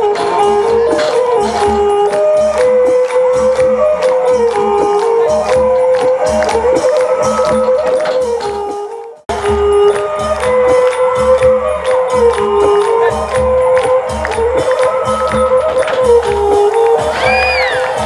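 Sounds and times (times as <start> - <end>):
stepping melody: 0.0 - 18.0.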